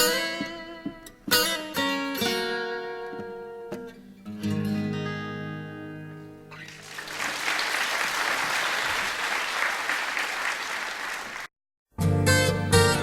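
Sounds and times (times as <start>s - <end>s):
audience applause: 6.6s - 11.5s.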